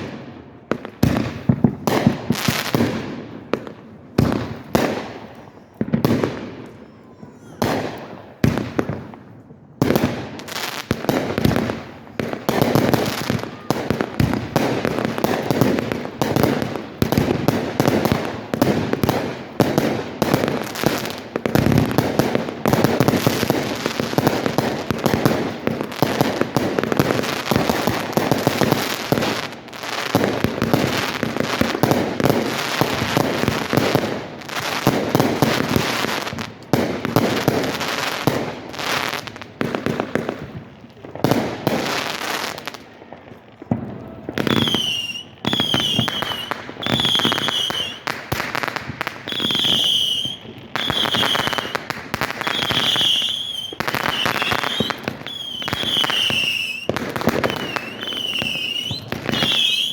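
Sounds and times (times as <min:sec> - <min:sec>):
fireworks booming and crackling: 0:00.0 - 0:59.9.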